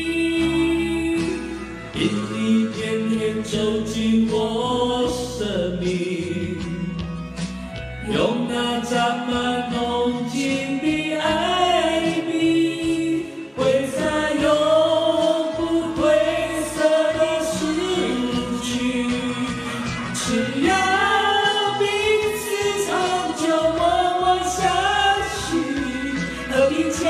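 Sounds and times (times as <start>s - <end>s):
instrumental accompaniment: 0.0s - 27.0s.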